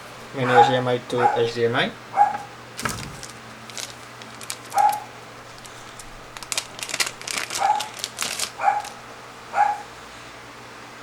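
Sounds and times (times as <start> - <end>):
dogs barking: 0.4 - 1.5, 2.1 - 2.5, 8.6 - 8.9, 9.5 - 9.9
small items clicking and rustling: 6.4 - 8.5.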